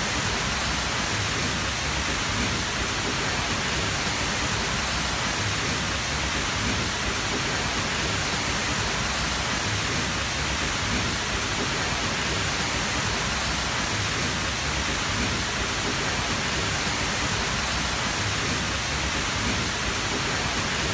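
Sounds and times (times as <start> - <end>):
waterfall rushing: 0.0 - 20.9.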